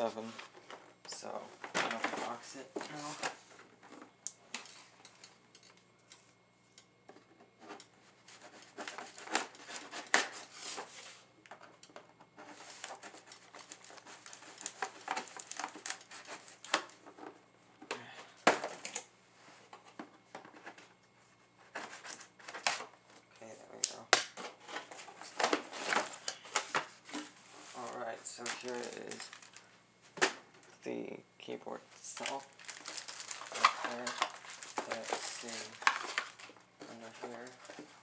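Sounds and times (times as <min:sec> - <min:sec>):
packaging rustling and tearing: 0:08.3 - 0:11.1, 0:12.5 - 0:17.1, 0:24.4 - 0:29.7, 0:32.0 - 0:38.0.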